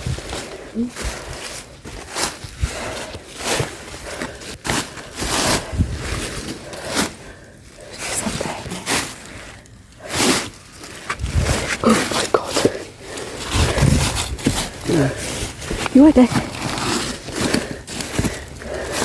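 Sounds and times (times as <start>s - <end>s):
footsteps scuffing and scraping: 0.0s - 7.2s.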